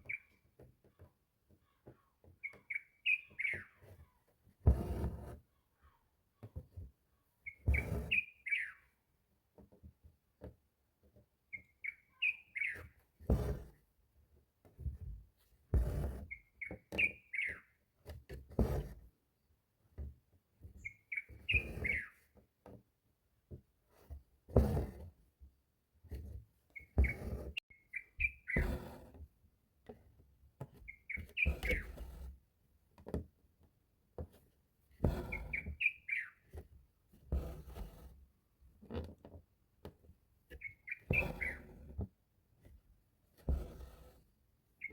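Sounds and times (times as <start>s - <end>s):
bird chirping: 0.0s - 0.4s, 2.4s - 3.9s, 7.4s - 8.9s, 11.5s - 13.0s, 16.3s - 17.7s, 20.8s - 22.2s, 26.8s - 28.6s, 30.9s - 31.9s, 35.3s - 36.5s, 40.6s - 41.7s.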